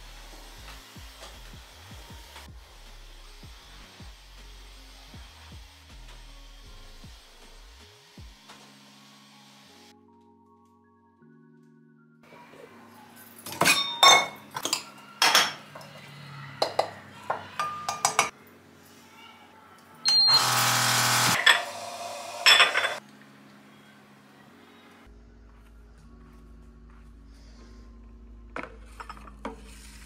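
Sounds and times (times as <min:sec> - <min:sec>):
dishes and glassware clinking: 0:13.4 - 0:16.0, 0:16.6 - 0:18.3, 0:22.4 - 0:23.0.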